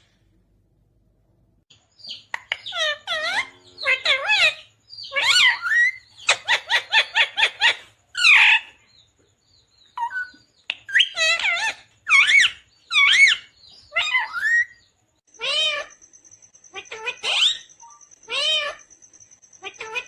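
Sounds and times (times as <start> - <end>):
parrot calling loudly: 2.5 - 8.7, 10.9 - 14.8.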